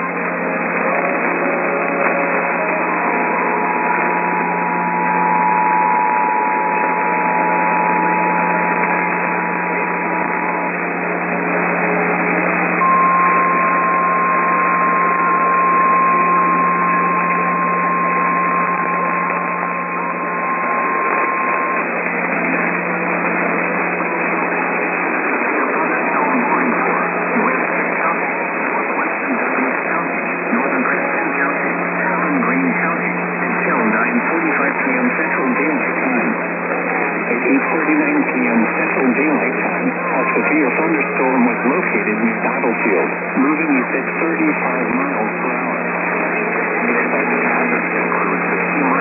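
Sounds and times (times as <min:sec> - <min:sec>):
two-tone alarm: 0:00.0 - 0:25.2
radio static and hiss: 0:00.0 - 0:49.0
steady warning tone: 0:00.0 - 0:49.0.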